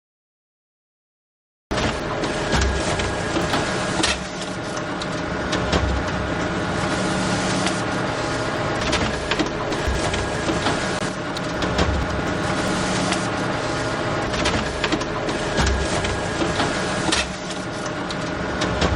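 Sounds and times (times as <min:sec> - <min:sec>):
low thumps: 0:03.4 - 0:04.4, 0:08.5 - 0:13.8.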